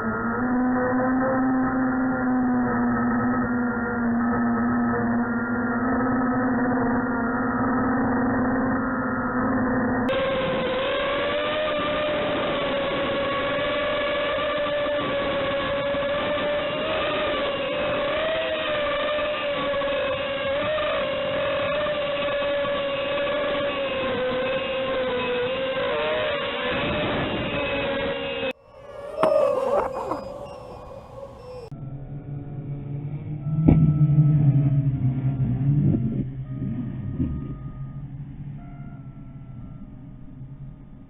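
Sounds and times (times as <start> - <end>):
model aircraft motors whining: 0.0 - 31.8.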